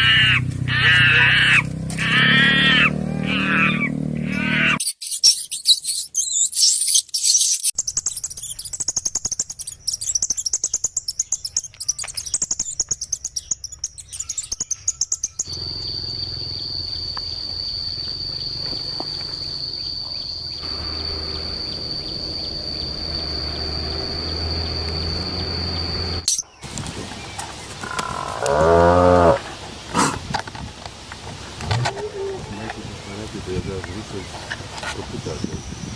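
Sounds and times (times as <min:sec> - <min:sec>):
birds chirping and calling: 0:00.0 - 0:17.5, 0:31.7 - 0:35.9
insect buzzing high-pitched: 0:07.8 - 0:19.9.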